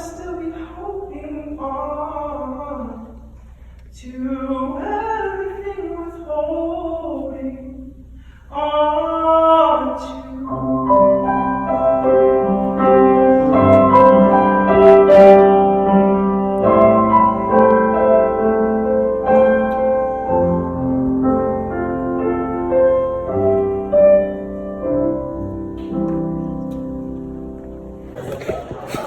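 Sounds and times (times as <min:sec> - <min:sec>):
piano playing slow chords: 0:10.4 - 0:28.2.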